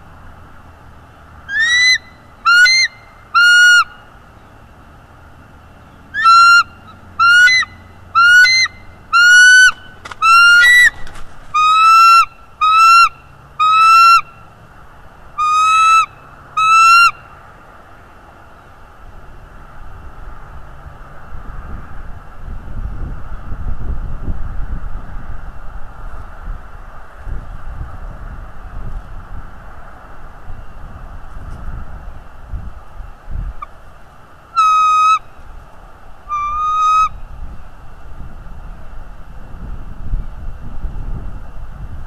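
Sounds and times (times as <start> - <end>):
eagle high whistled calls: 1.5 - 4.5, 5.9 - 14.4, 15.4 - 17.2, 34.6 - 35.3, 36.3 - 37.2.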